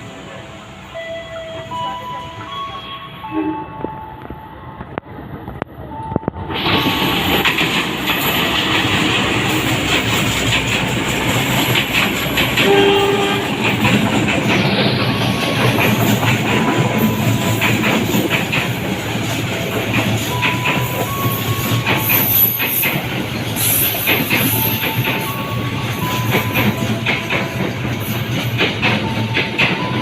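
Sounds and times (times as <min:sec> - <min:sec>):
train rolling past: 0:00.0 - 0:30.0
wheels clicking over rail joints: 0:06.0 - 0:30.0.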